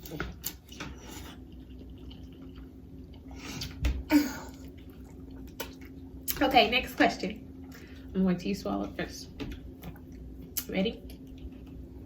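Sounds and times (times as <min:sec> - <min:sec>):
slurping and chewing noodles: 0:00.0 - 0:03.8.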